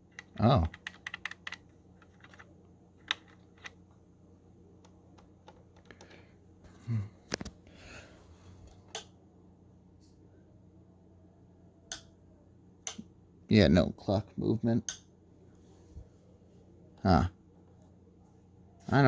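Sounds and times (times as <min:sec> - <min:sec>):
faint low hum: 0:00.0 - 0:19.0
plastic and metal parts clicking: 0:00.1 - 0:03.8, 0:04.8 - 0:06.2.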